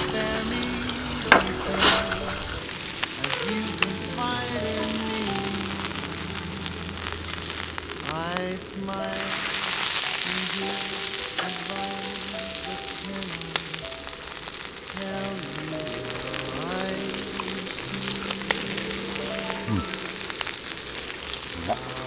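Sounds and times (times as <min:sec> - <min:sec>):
background music: 0:00.0 - 0:22.0
meat sizzling on a griddle: 0:00.0 - 0:22.0.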